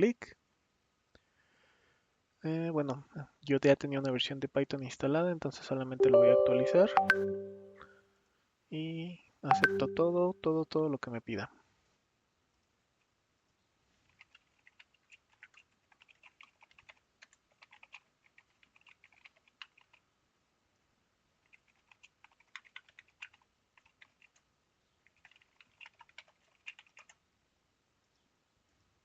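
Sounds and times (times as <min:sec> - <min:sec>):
computer keyboard typing: 0:17.6 - 0:19.9, 0:21.8 - 0:24.3.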